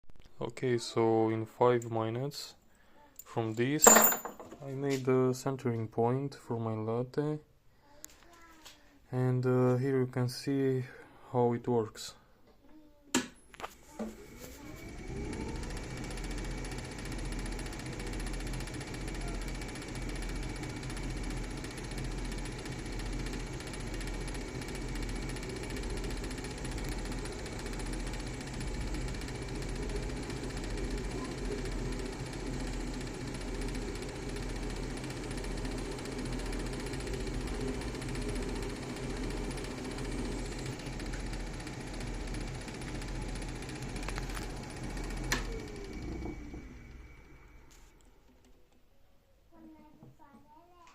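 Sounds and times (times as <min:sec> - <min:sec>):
lathe motor humming: 0:14.0 - 0:48.4.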